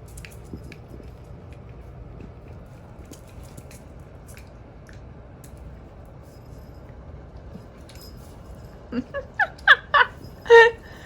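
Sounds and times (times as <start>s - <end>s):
dogs scuffling and claw clicks: 0.0s - 8.8s
low steady hum: 0.0s - 11.0s.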